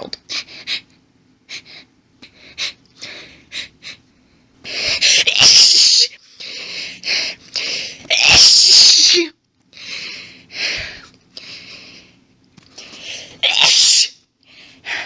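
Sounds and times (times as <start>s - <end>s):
woman sneezing: 5.1s - 6.1s, 13.4s - 14.2s.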